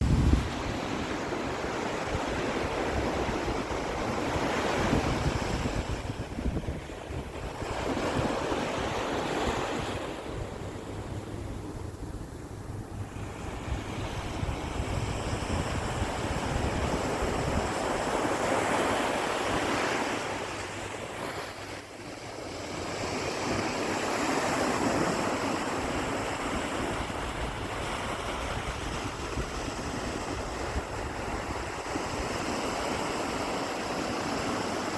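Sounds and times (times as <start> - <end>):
ocean waves breaking: 0.0 - 34.9.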